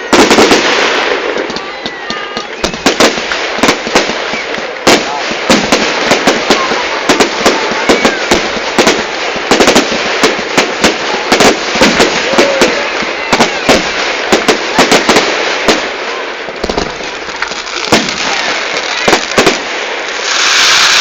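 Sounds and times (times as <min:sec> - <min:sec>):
faint firework whistles: 0:00.0 - 0:05.1, 0:06.2 - 0:09.8
firework bangs: 0:00.0 - 0:21.0
continuous crackle: 0:01.4 - 0:21.0.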